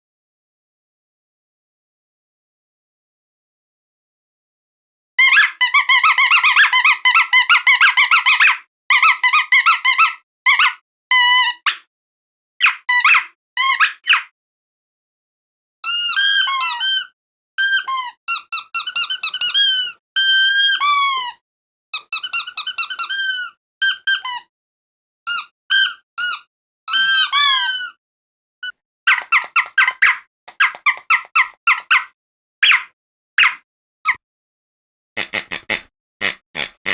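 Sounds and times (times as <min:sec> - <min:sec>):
squeaky dog toy squeaking: 0:05.2 - 0:11.9, 0:12.6 - 0:14.3, 0:15.8 - 0:24.5, 0:25.3 - 0:28.0, 0:28.6 - 0:34.2.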